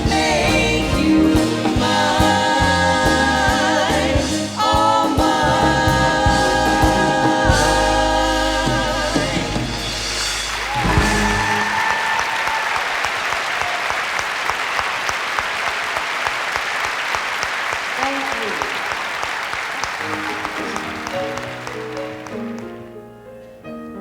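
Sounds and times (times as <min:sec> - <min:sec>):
female vocal trio singing in harmony: 0:00.0 - 0:10.1
band sustained chord: 0:06.2 - 0:11.4
audience applause: 0:09.2 - 0:22.9.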